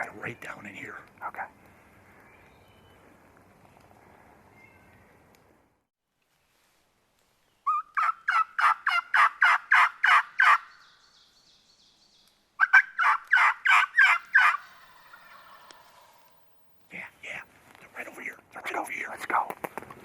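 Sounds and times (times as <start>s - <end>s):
turkey calling: 7.6s - 10.8s, 12.6s - 16.8s.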